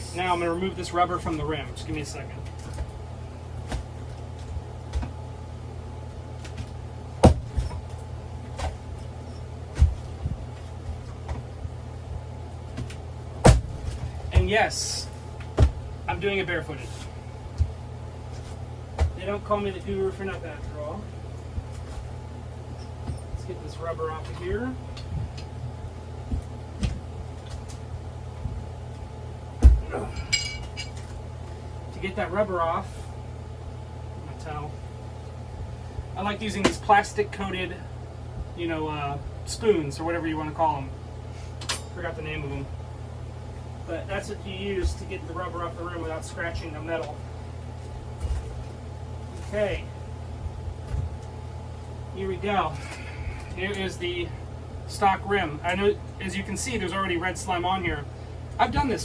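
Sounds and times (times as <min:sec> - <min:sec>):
steady low hum: 0:00.0 - 0:59.0
heavy thump: 0:07.2 - 0:07.8, 0:13.5 - 0:14.5, 0:15.6 - 0:15.8.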